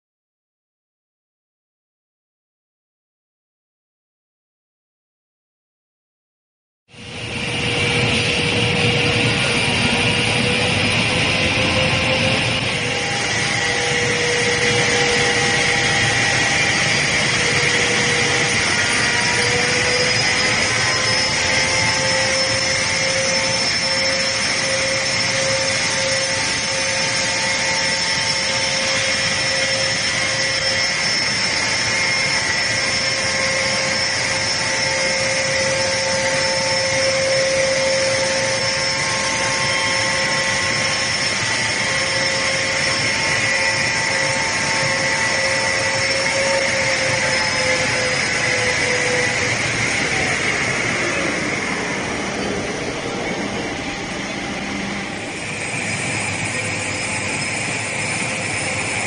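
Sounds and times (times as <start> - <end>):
woodworking machinery motor whine: 7.0 - 59.0.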